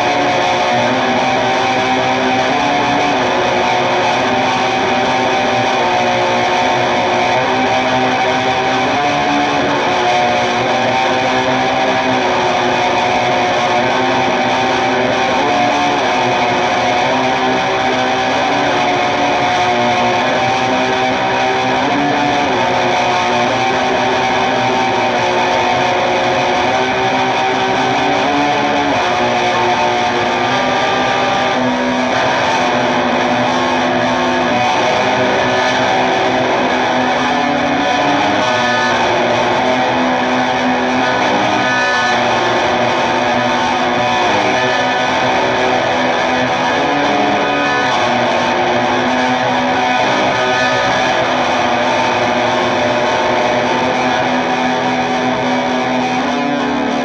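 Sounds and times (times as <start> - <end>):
distorted electric guitar: 0.0 - 57.0.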